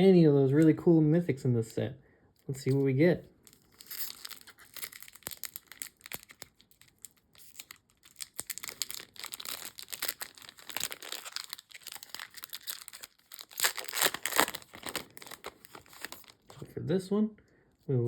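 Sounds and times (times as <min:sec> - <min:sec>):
foil pack tearing and crinkling: 0:03.5 - 0:16.5.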